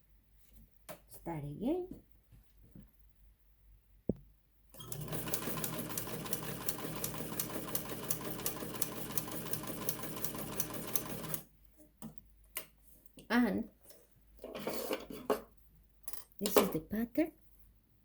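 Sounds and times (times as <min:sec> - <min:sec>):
sewing machine running: 0:04.8 - 0:11.4.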